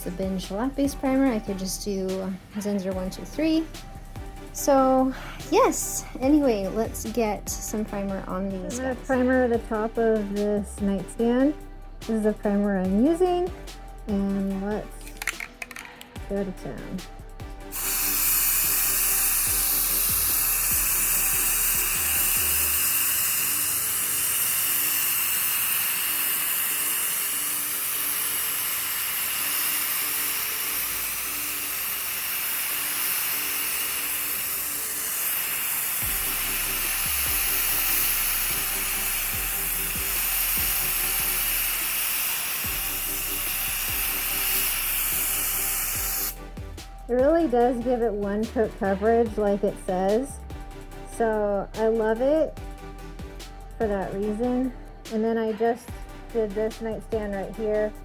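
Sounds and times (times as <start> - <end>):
paint spray hiss: 17.7 - 46.4
paint sprayer motor whining: 17.7 - 46.4.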